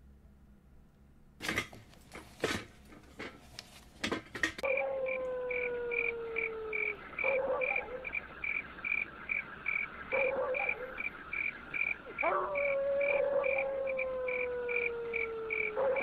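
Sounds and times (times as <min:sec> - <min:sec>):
crickets chirping: 0:04.6 - 0:16.0
faint steady drone: 0:04.6 - 0:16.0.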